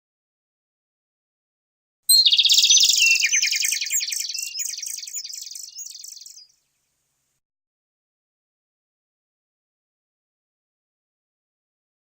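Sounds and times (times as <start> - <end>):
bird chirping trill: 2.1 - 6.8.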